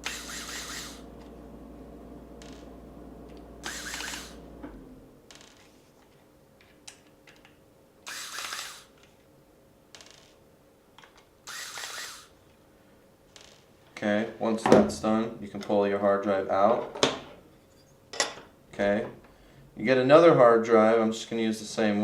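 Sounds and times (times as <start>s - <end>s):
screwdriver whirring: 0.0s - 1.3s, 3.3s - 4.4s, 8.0s - 9.1s, 11.4s - 12.4s
low steady hum: 0.0s - 8.2s.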